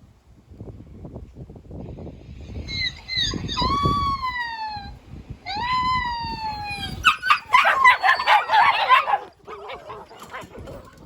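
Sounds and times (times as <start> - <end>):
puppies squealing and barking: 2.7 - 4.9, 6.6 - 11.0
puppy whining: 2.8 - 11.0
puppy whimpers: 2.9 - 4.9, 5.5 - 11.0.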